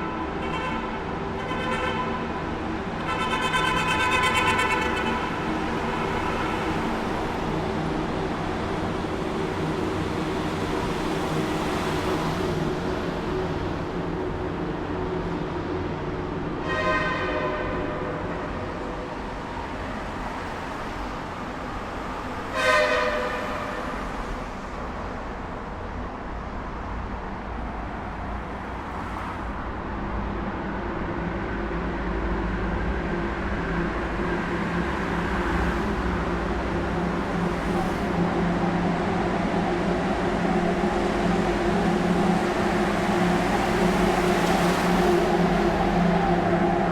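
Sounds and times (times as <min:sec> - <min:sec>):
rumble of passing vehicles: 0:00.0 - 0:46.9
vehicle horn blasts: 0:03.0 - 0:05.4, 0:16.6 - 0:18.3, 0:22.5 - 0:23.9.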